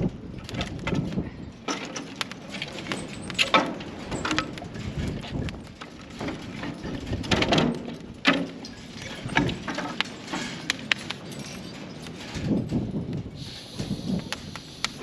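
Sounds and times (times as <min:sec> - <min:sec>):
knocking and clattering: 0:00.0 - 0:13.2
sharp clicks: 0:14.2 - 0:15.0.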